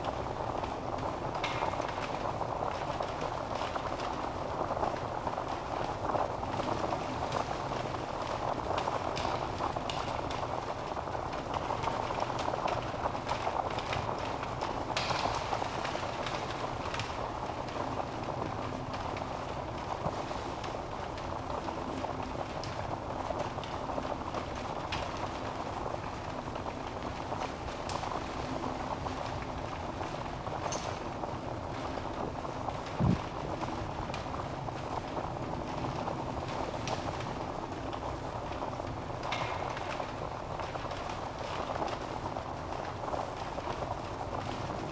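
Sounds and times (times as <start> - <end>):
fire crackling and popping: 0.0 - 44.9
fire rushing hiss: 28.3 - 39.3.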